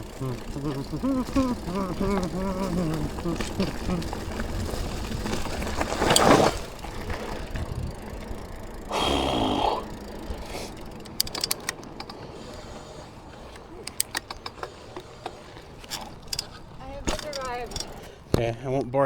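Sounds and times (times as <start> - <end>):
bike sharp clicks: 0.0 - 18.5
bike tyres rumbling: 0.0 - 19.0
wind noise: 7.0 - 8.3.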